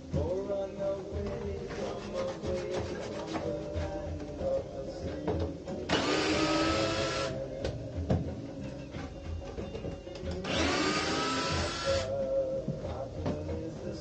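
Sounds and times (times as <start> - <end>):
background music: 0.0 - 14.0
small power tool whining: 10.4 - 12.1.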